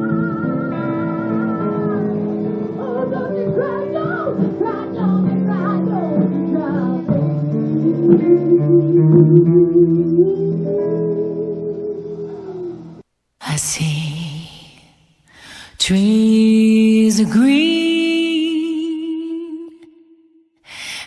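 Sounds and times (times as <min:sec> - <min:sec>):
guitar accompaniment: 0:00.0 - 0:13.0
person singing wordless melody: 0:00.0 - 0:20.4.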